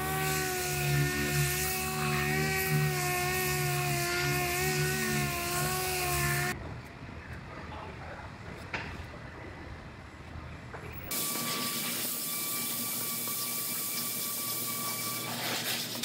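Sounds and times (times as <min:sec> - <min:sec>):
power tool whining: 0:00.0 - 0:06.6, 0:11.1 - 0:16.0.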